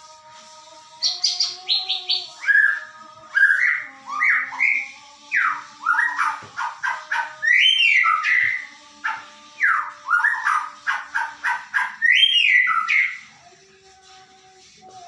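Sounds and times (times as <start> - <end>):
bird singing whistled phrases: 1.0 - 6.8, 7.4 - 8.6, 9.6 - 11.0, 11.8 - 13.2.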